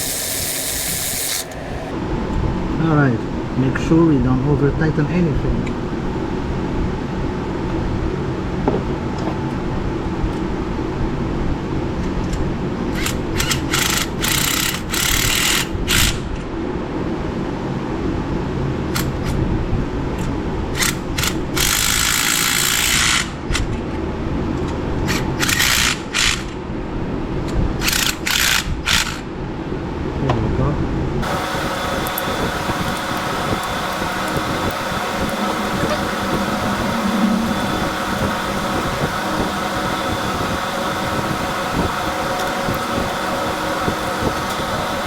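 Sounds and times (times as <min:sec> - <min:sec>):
steady background hum: 0:00.0 - 0:02.9, 0:30.9 - 0:45.0.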